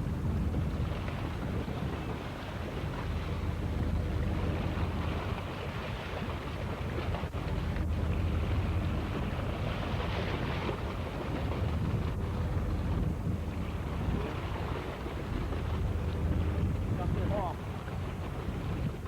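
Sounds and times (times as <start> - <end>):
boat engine humming: 0.0 - 19.0
wind buffeting microphone: 0.0 - 19.0.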